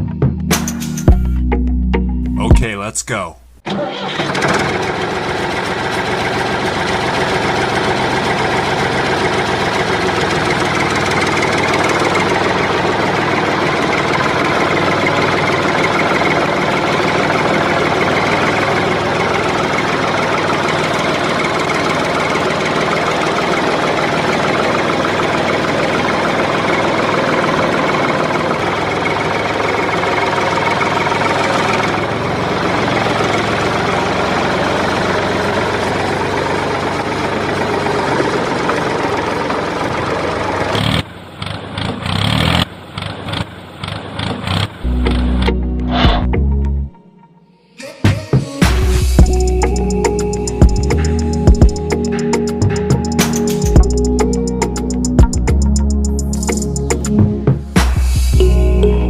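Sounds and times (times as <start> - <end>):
small model tractor motor running: 4.2 - 45.4.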